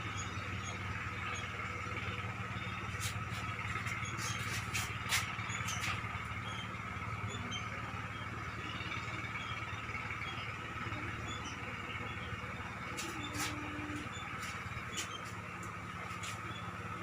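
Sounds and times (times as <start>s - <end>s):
generator engine running: 0.0s - 17.0s.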